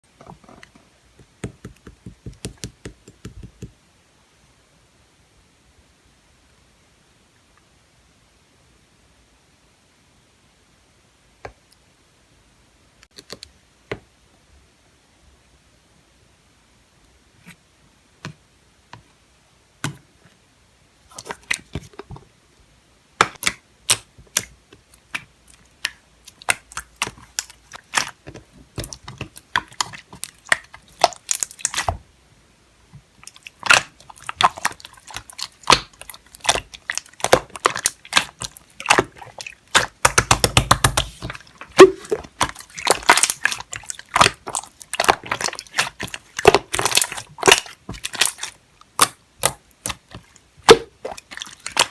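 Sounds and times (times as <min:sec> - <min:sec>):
slime squished by hand: 0:23.2 - 0:32.0, 0:33.2 - 0:51.9
sticky clicks and pops: 0:33.6 - 0:51.9.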